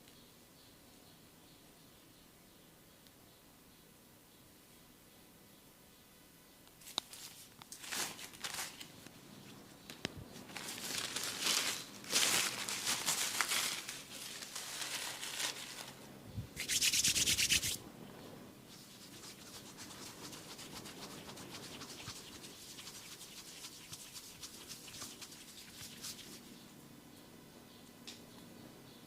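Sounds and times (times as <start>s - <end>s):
hands rubbing through hair: 10.4s - 17.8s, 18.7s - 26.5s.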